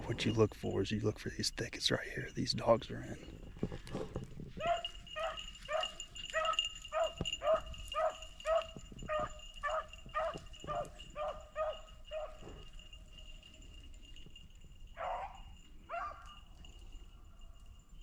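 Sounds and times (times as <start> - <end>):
dog yelping: 4.6 - 12.5, 15.0 - 16.3.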